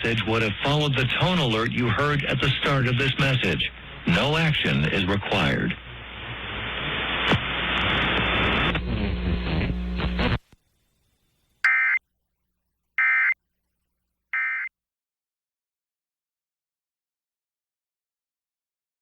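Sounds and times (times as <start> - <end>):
radio static with hum: 0.0 - 10.4.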